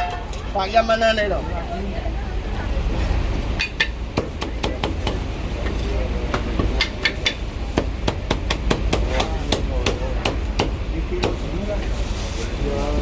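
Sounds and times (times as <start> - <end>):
cleaver chopping meat on wood: 4.2 - 5.3, 6.3 - 11.4.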